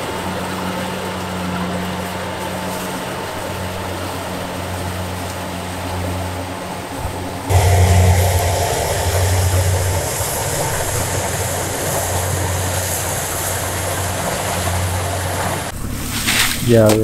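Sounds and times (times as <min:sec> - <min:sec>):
farm machine engine humming: 0:07.5 - 0:15.7.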